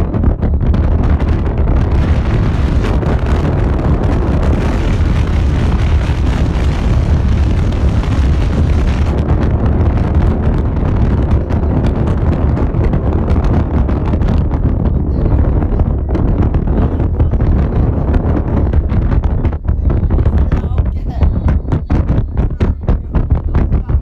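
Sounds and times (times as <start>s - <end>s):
strong wind buffeting microphone: 0.0s - 24.0s.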